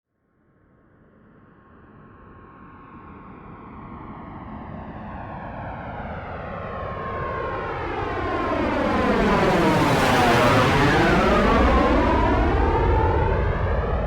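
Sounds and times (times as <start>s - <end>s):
aircraft approaching: 4.2s - 14.0s.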